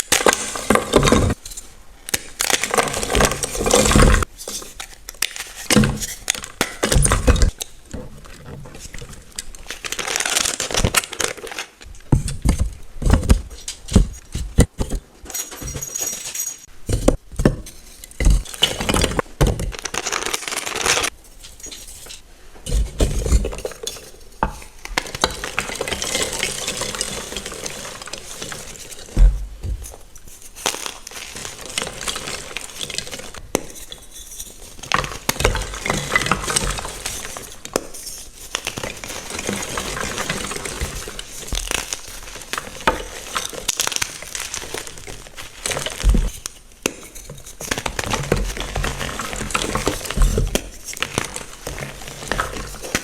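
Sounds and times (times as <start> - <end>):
chalk crunching and crumbling: 17.6 - 53.0.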